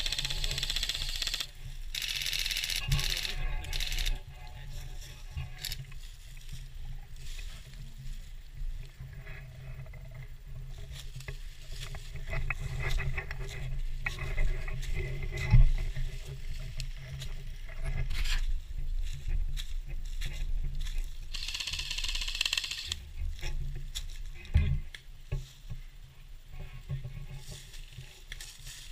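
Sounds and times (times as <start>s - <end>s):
camera handling noise: 0.0s - 4.2s
scattered clicks: 0.0s - 4.2s, 21.3s - 23.0s
wind rumble: 0.0s - 25.0s.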